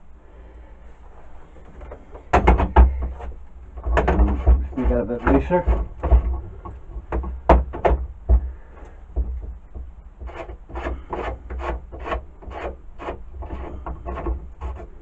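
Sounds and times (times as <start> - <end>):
lathe parts scraped by hand: 10.2 - 15.0.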